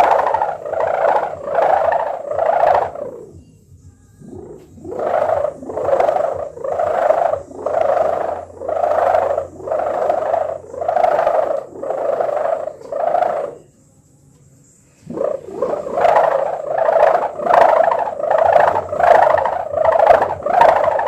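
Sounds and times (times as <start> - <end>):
ribbon kite hummer buzzing: 0.0 - 21.0.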